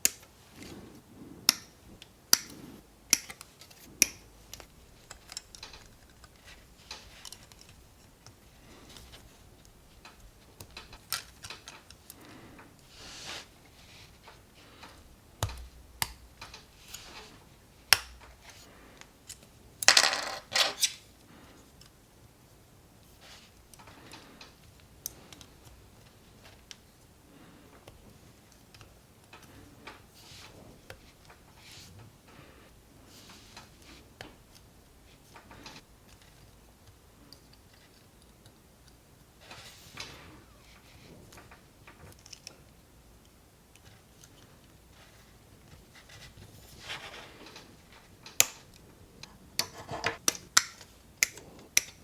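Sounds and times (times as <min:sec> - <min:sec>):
plastic parts clicking and rustling: 0:01.5 - 0:12.9, 0:33.2 - 0:52.0.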